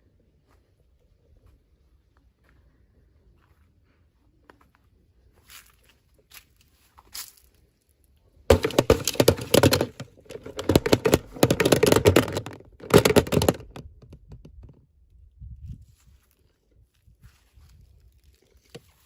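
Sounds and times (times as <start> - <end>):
toy packaging crackling: 8.5 - 13.8.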